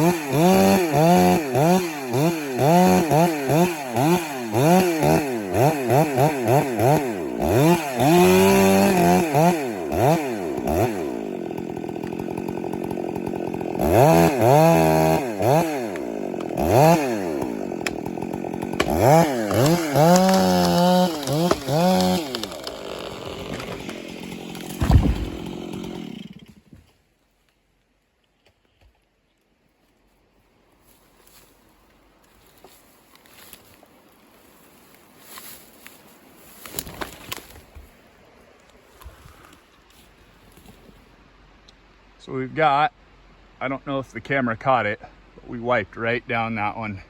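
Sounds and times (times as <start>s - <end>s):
chainsaw revving: 0.0s - 26.6s
low thump: 24.7s - 25.4s.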